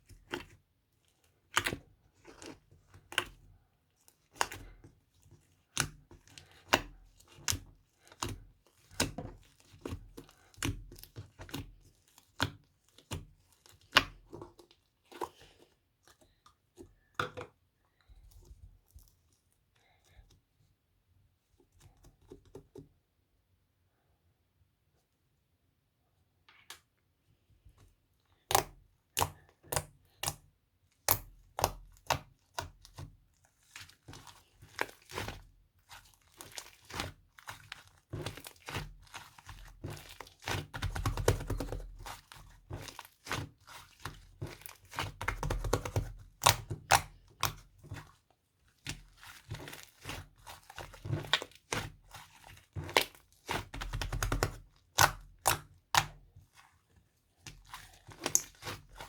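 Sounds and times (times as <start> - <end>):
whisk clicking and scraping bowl: 4.0 - 15.5, 31.0 - 56.8, 57.4 - 59.0.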